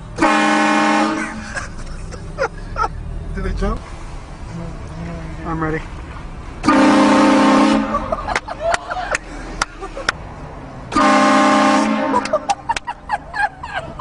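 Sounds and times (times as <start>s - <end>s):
train horn blasts: 0.2s - 1.4s, 6.6s - 8.1s, 10.9s - 12.3s.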